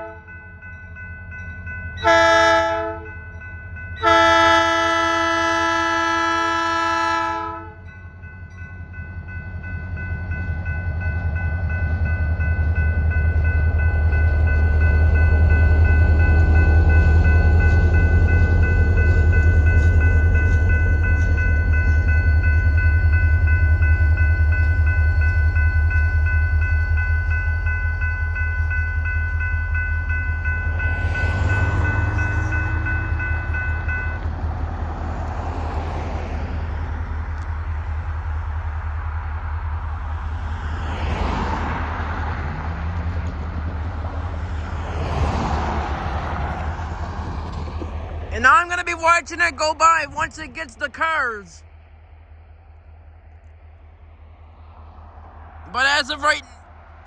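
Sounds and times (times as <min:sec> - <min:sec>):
locomotive air horn: 0:00.0 - 0:00.3, 0:02.0 - 0:03.1, 0:04.0 - 0:07.8
locomotive engines rumbling: 0:01.4 - 0:28.0, 0:28.6 - 0:40.6, 0:41.6 - 0:57.0.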